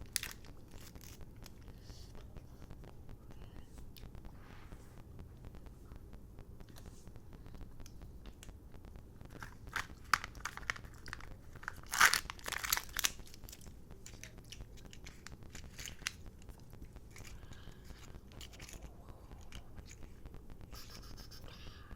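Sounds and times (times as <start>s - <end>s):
wrapper and plastic crackling: 0.0s - 1.7s, 9.3s - 20.2s.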